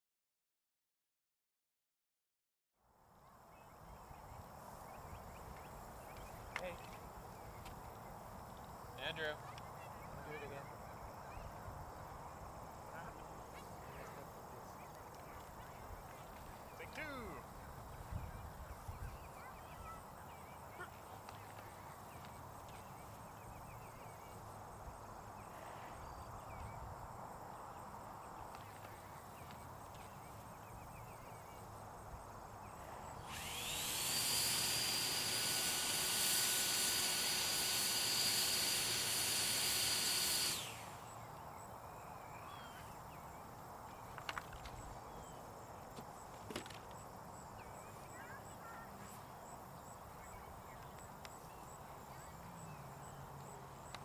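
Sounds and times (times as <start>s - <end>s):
faint birdsong: 3.0s - 54.0s
leaf blower blowing: 32.7s - 41.4s.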